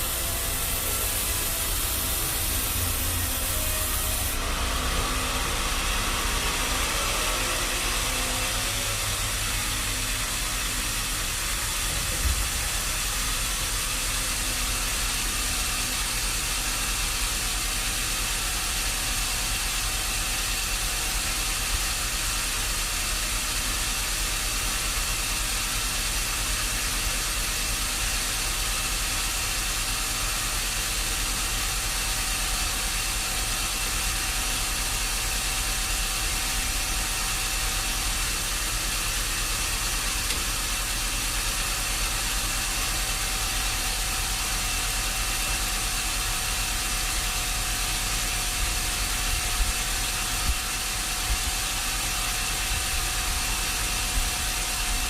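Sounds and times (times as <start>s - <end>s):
sawmill machine drone and hiss: 0.0s - 55.0s.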